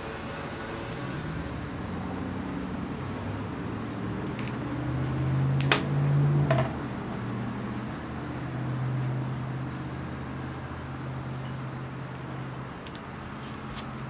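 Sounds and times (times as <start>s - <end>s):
sharp metallic clinks: 4.2s - 5.9s.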